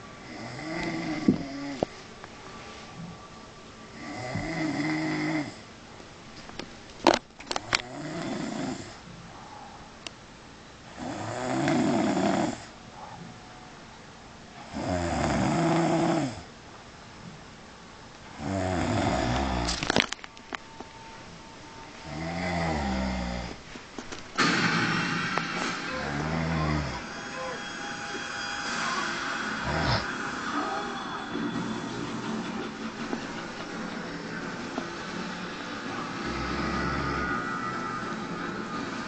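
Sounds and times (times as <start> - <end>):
boy snoring: 0.2 - 1.9, 4.0 - 5.6, 7.8 - 9.0, 11.0 - 12.7, 14.7 - 16.5, 18.4 - 19.8, 22.0 - 23.6, 25.9 - 27.6, 28.7 - 31.0, 36.2 - 37.6.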